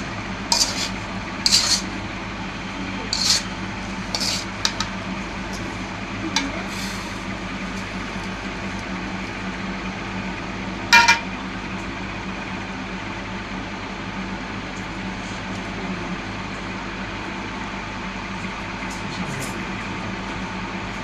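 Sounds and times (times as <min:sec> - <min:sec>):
steady low hum: 0:00.0 - 0:21.0
utensil striking cooking pot: 0:00.5 - 0:01.8, 0:04.1 - 0:05.0, 0:10.9 - 0:11.3.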